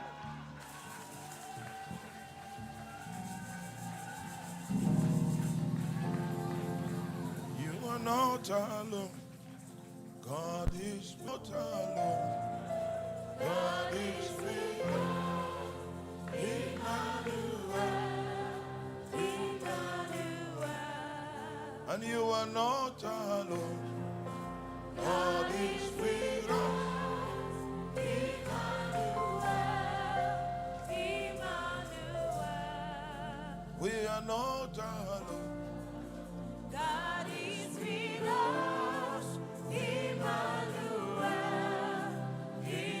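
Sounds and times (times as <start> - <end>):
choir singing held notes: 0.0 - 43.0
held accompaniment notes: 3.4 - 22.4.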